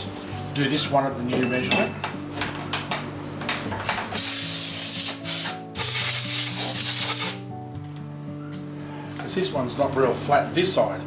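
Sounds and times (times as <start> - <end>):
compressed air blow gun bursts: 4.2 - 7.4.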